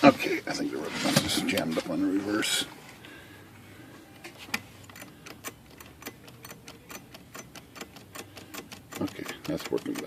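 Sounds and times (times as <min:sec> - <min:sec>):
typewriter mechanism clicking: 0:04.9 - 0:10.0.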